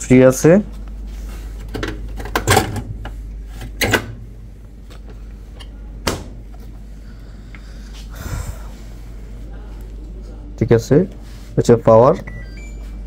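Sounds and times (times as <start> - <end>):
steady low hum: 0.0 - 13.0
washing machine clattering: 1.7 - 3.0.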